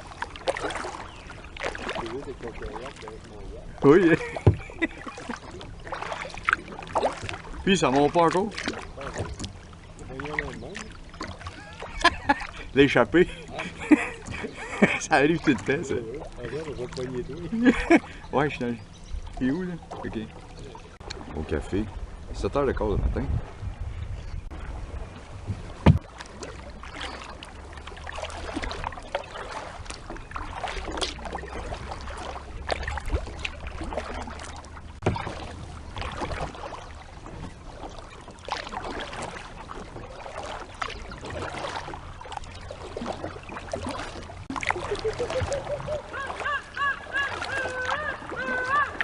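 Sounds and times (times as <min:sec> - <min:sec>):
paddles splashing in water: 0:00.0 - 0:49.0
wind rumble on microphone: 0:20.6 - 0:26.1
wavering high-pitched call: 0:45.6 - 0:49.0.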